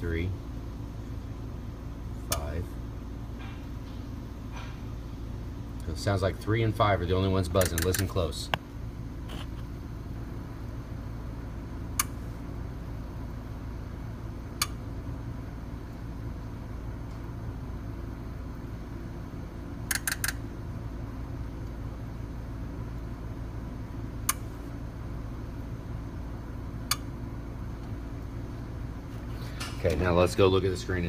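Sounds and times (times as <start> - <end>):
steady low hum: 0.0 - 31.0
fuel injector clicks: 19.9 - 20.4.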